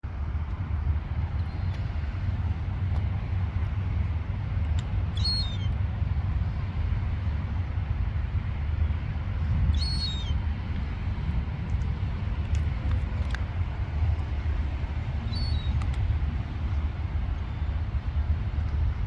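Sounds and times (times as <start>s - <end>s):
steady low rumble: 0.0s - 19.0s
young gull calling: 5.1s - 5.8s, 9.7s - 10.5s, 15.2s - 16.0s.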